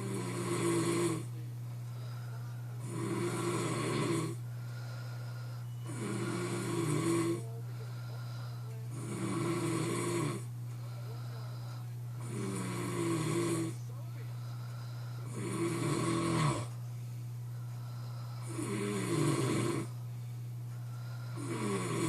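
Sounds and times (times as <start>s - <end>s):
man snoring: 0.0s - 1.4s, 2.0s - 16.7s, 17.8s - 20.0s, 21.0s - 22.0s
steady low hum: 0.0s - 22.0s.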